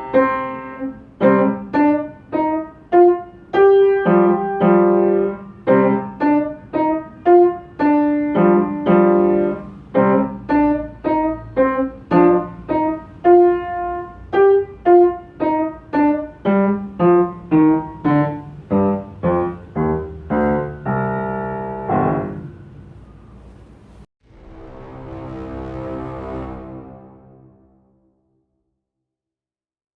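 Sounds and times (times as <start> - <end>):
piano playing notes and chords: 0.0 - 23.0.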